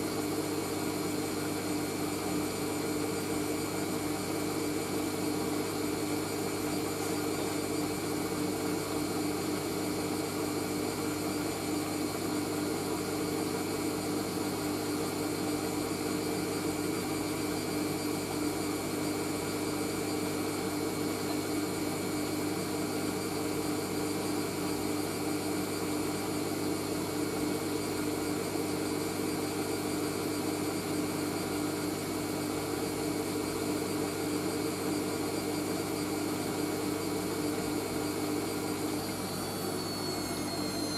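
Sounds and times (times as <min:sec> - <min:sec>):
washing machine spinning: 0:00.0 - 0:40.9.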